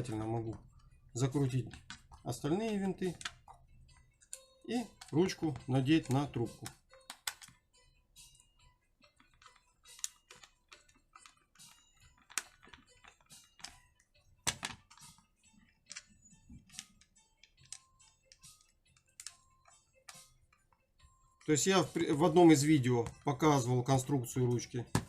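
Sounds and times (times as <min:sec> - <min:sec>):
screwdriver clicks and taps: 0:04.3 - 0:07.6, 0:09.2 - 0:13.8, 0:16.7 - 0:20.6.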